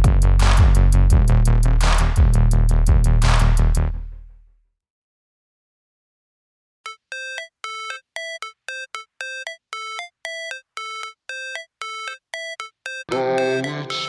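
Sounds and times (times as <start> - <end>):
melody of short electronic notes: 6.9 - 14.0.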